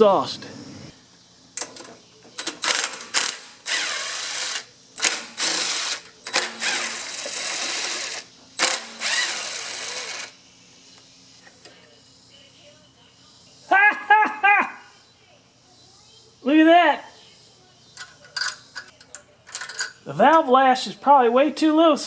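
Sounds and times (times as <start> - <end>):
cordless driver spinning: 2.6 - 10.3.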